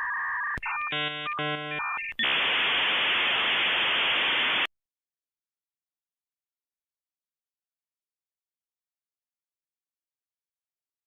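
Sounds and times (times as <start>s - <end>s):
paired beeping tones: 0.0s - 2.3s
static hiss: 0.6s - 4.7s
chord-like electronic tones: 0.9s - 1.8s.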